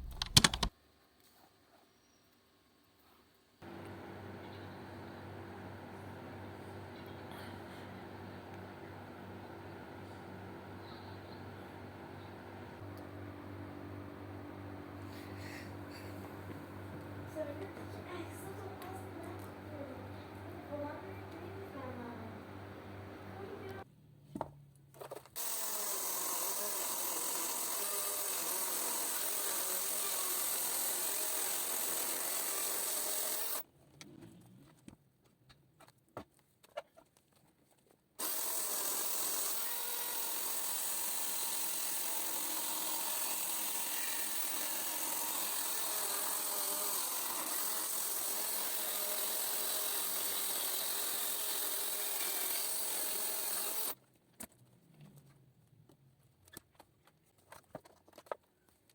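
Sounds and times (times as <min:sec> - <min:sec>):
power tool working wood: 0:03.6 - 0:23.8, 0:25.4 - 0:33.6, 0:38.2 - 0:54.0.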